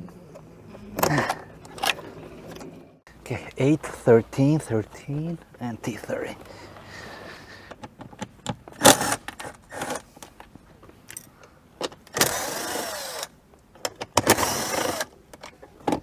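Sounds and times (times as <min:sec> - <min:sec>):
clicks and knocks of tools: 0:07.7 - 0:12.3
cordless power tool motor: 0:08.8 - 0:10.0, 0:12.2 - 0:13.3, 0:14.2 - 0:15.1.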